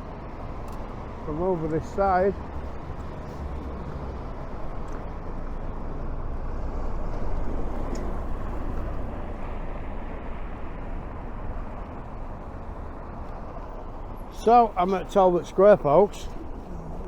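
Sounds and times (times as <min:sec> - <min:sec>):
road traffic rumbling: 0:00.0 - 0:17.0.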